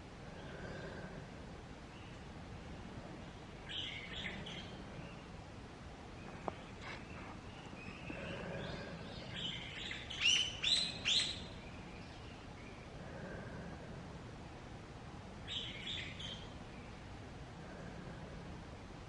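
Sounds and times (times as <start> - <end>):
bird calls: 3.1 - 5.3, 6.1 - 13.5, 15.4 - 17.0.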